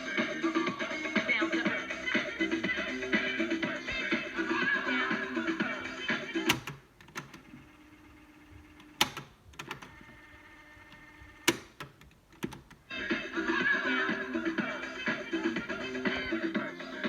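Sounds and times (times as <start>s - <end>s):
music through a speaker: 0.0s - 6.7s, 12.9s - 17.0s
radio switches clicking: 6.4s - 7.4s, 8.8s - 10.2s, 10.8s - 12.8s.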